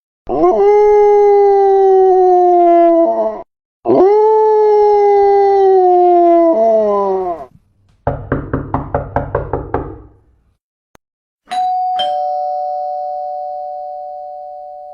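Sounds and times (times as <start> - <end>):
knocking on a door: 7.9 - 10.2
ding-dong doorbell chime: 11.5 - 14.9.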